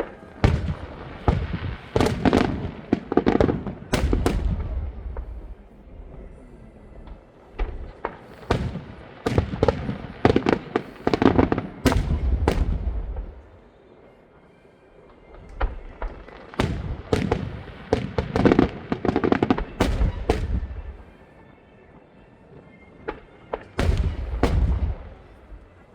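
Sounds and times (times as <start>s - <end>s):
deep firework booms: 0.0s - 5.6s, 8.4s - 13.4s, 16.6s - 21.0s, 23.8s - 25.4s
fireworks bangs: 0.0s - 5.8s, 7.1s - 13.5s, 15.5s - 21.2s, 23.1s - 25.8s.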